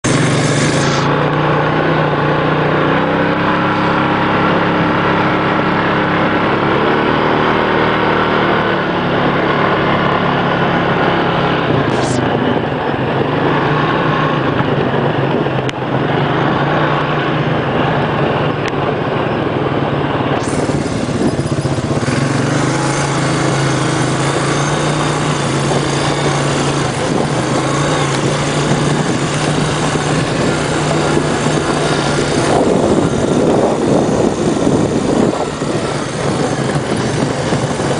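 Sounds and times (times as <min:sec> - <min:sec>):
atv engine running: 0:00.0 - 0:37.9
constant rushing noise: 0:00.0 - 0:37.9.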